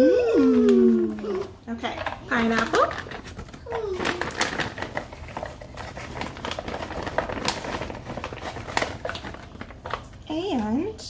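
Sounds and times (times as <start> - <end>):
frozen fruit clattering into blender: 0.0 - 10.9.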